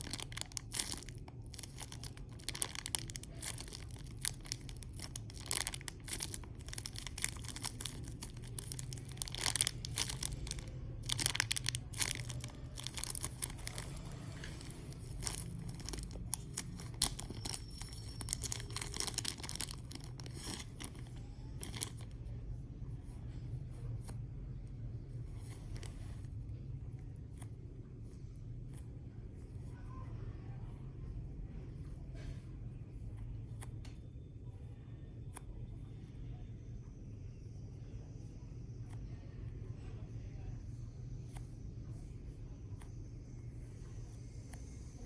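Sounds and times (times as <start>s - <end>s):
crackly rustling of foam squishy: 0.0s - 22.4s, 25.0s - 29.9s
steady low hum: 0.0s - 45.0s.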